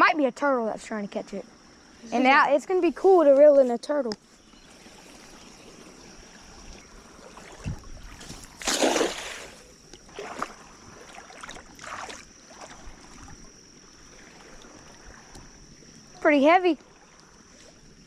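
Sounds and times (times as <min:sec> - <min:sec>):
water splashing: 0:04.7 - 0:18.0.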